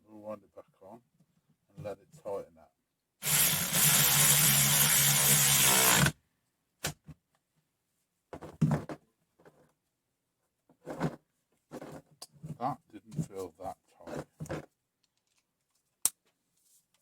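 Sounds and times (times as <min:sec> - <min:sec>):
cordless ratchet running: 0:03.2 - 0:06.1.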